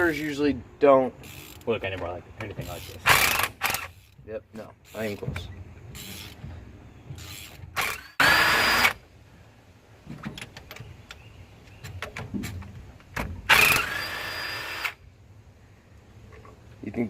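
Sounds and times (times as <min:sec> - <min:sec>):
power wrench whining: 0:02.6 - 0:04.2, 0:05.9 - 0:06.4, 0:07.1 - 0:09.0, 0:13.5 - 0:15.0.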